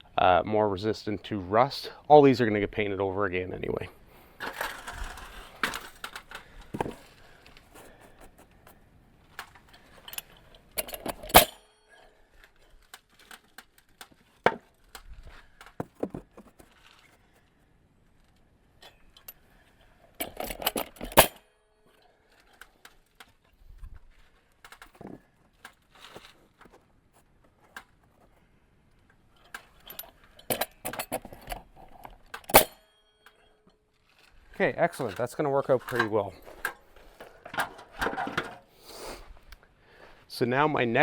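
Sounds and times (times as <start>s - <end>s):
metallic clicks and rattles: 9.3s - 14.2s, 18.8s - 23.4s, 29.0s - 33.5s, 34.2s - 38.6s
nail gun shots: 32.4s - 32.8s.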